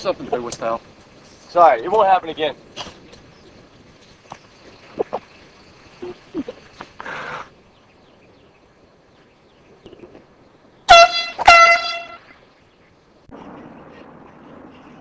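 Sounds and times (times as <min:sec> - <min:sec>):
air horn blasts: 0:10.9 - 0:12.3.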